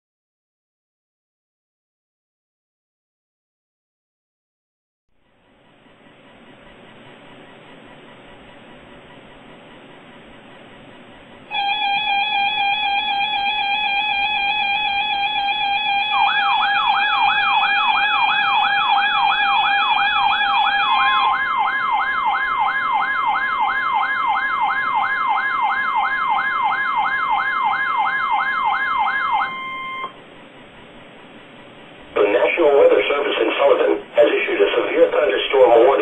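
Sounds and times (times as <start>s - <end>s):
steady electronic alarm tone: 11.4s - 30.2s
warbling siren-like alert: 11.5s - 30.2s
faint radio hiss: 30.9s - 36.0s.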